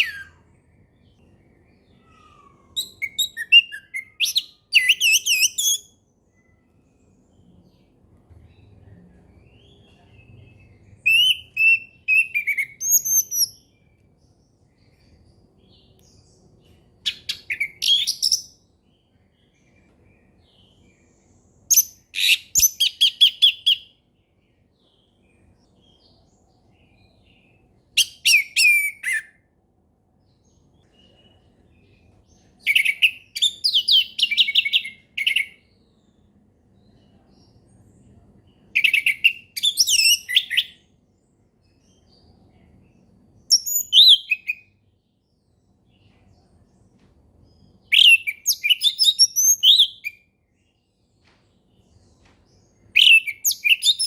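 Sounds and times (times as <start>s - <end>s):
thrush singing whistled phrases: 11.1s - 13.5s.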